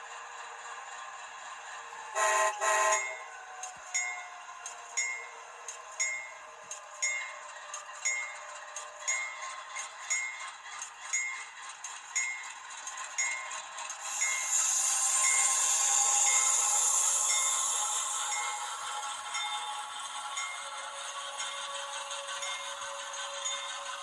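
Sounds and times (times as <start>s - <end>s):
locomotive bell ringing: 2.2s - 3.3s, 7.0s - 11.6s, 13.2s - 24.0s
steady hiss: 14.0s - 19.0s.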